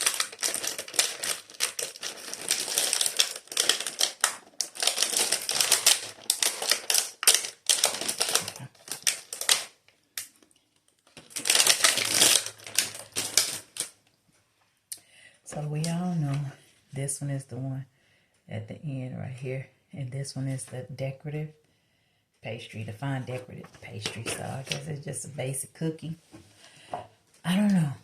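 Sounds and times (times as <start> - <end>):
pastry packaging crinkling: 0.0 - 14.0, 23.3 - 25.0.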